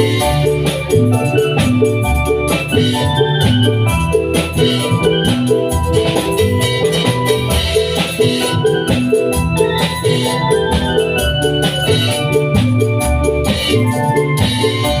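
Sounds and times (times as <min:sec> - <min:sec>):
keyboard melody over bass and drums: 0:00.0 - 0:15.0.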